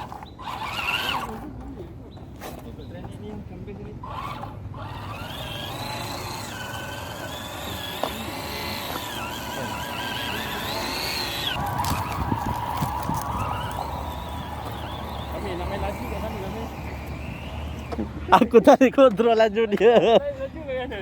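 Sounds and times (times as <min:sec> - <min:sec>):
electric motor whining: 0:00.0 - 0:01.7, 0:04.0 - 0:18.3.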